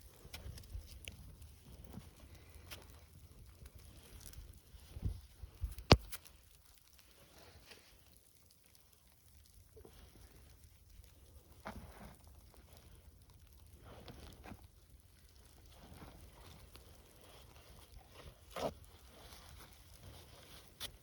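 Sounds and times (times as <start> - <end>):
dry grass rustling and crunching: 0.0 - 21.0
wind rumble on microphone: 3.3 - 5.9.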